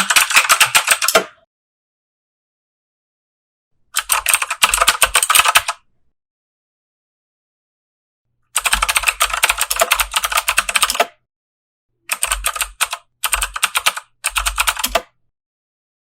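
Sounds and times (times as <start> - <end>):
mechanical keyboard typing: 0.0 - 1.4, 4.0 - 5.8, 8.6 - 11.1, 12.1 - 15.2.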